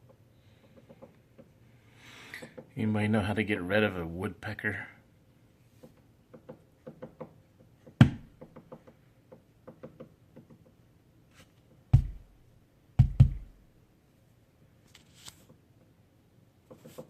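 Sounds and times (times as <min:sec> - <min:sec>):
woodpecker tapping on wood: 0:00.0 - 0:01.5, 0:05.8 - 0:10.8
loud knocks on wood: 0:07.9 - 0:08.9, 0:11.9 - 0:12.3, 0:13.0 - 0:13.6.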